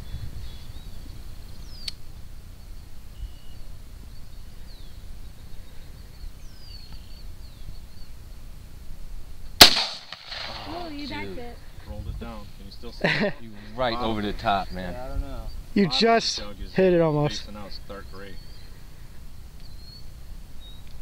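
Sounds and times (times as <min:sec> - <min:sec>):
bird chirps: 0:00.0 - 0:08.2, 0:15.4 - 0:21.0
rifle shot: 0:09.6 - 0:10.8.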